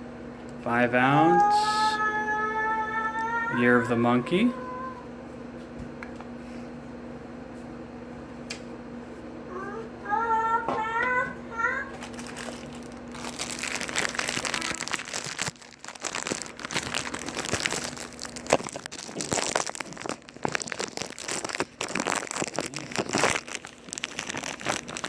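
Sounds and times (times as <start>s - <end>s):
packaging crinkling: 11.9s - 25.0s.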